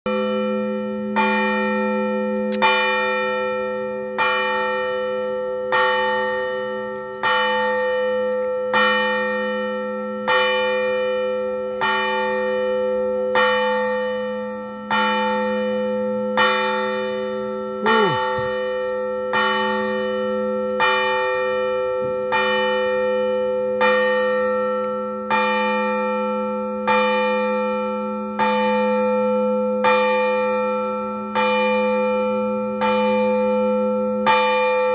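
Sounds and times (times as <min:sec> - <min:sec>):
large church bell tolling: 0:00.1 - 0:34.9.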